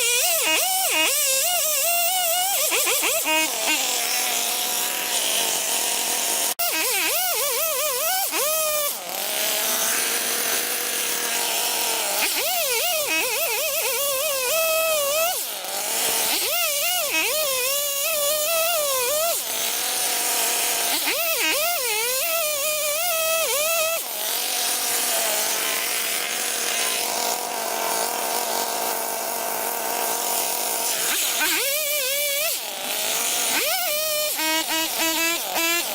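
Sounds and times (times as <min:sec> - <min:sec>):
chainsaw idling: 0:00.0 - 0:35.9
chainsaw revving and cutting: 0:00.0 - 0:35.9.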